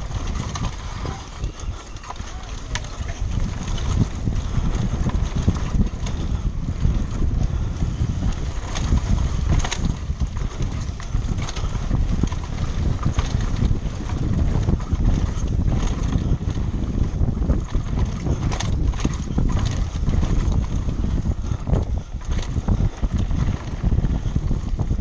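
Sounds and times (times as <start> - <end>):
heavy rumble: 0.0 - 25.0
wind rushing over microphone: 0.0 - 25.0.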